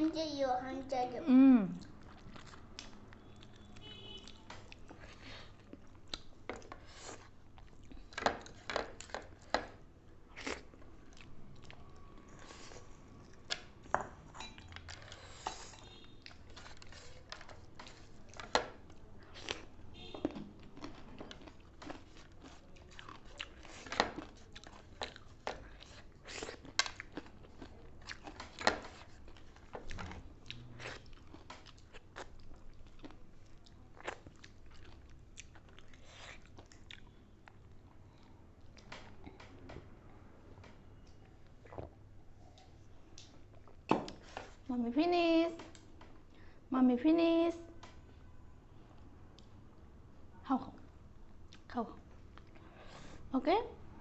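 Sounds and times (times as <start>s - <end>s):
chewing and crunching: 1.8s - 39.6s.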